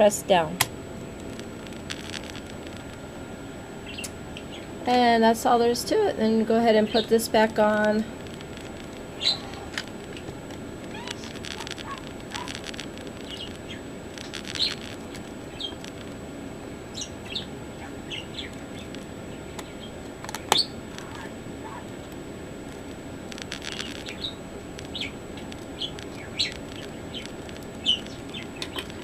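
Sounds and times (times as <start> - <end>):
high bird chirps: 9.2 - 9.6, 13.2 - 14.8, 23.7 - 25.2, 25.8 - 28.7.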